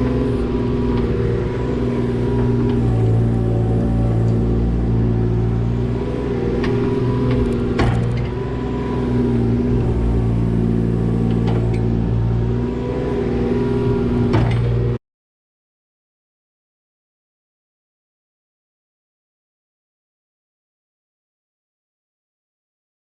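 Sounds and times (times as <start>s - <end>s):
mini excavator diesel engine running: 0.0s - 15.0s.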